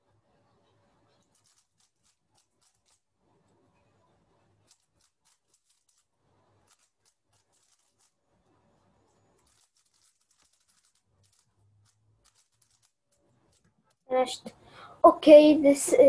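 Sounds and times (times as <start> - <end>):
plastic puzzle cube clicking: 1.2 - 3.0, 4.6 - 8.1, 9.4 - 13.7.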